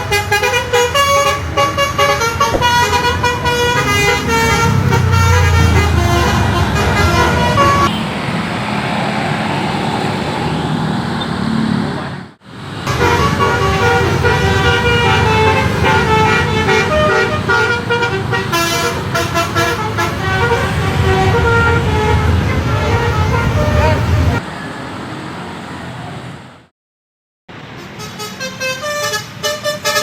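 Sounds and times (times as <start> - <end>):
musical bus horn playing a tune: 0.0 - 8.0, 12.9 - 24.4, 27.7 - 30.0.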